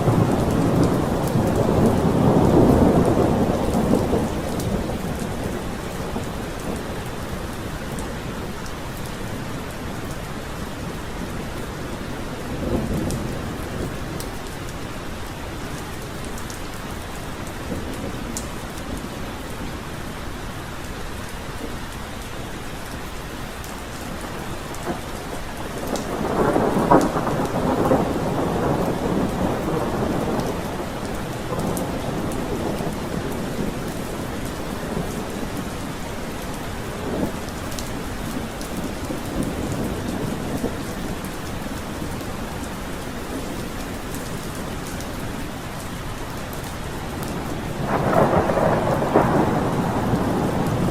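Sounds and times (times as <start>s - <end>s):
thunder rumbling: 0.0s - 8.2s, 24.1s - 45.0s, 46.4s - 50.9s
steady rain falling: 0.0s - 50.9s.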